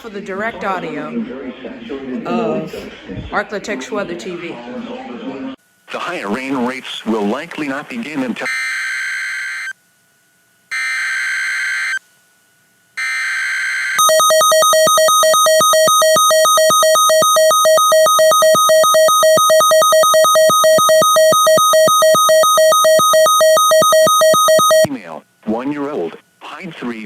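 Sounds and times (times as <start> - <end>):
rapidly pulsing electronic alert tone: 13.0 - 24.9.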